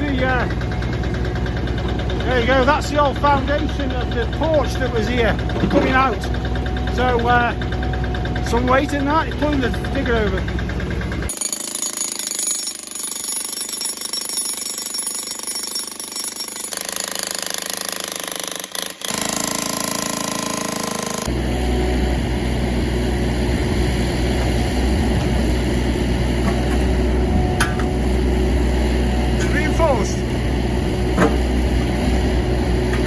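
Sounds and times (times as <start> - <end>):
excavator engine rumble: 0.0 - 11.3, 21.3 - 33.0.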